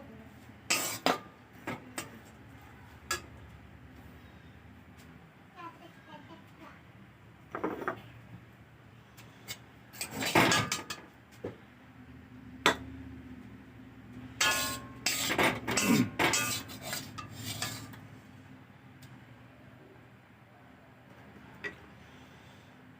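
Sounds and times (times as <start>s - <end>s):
metal utensils clinking on cookware: 0.7s - 1.2s, 10.0s - 11.0s, 14.4s - 18.0s.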